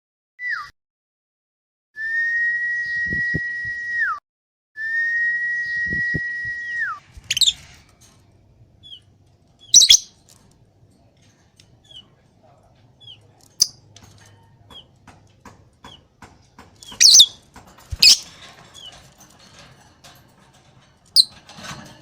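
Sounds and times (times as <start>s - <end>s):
lovebird harsh squawks: 9.8s - 10.1s, 17.0s - 17.3s, 18.0s - 18.2s
lovebird whistled notes: 9.8s - 10.1s, 17.0s - 17.3s.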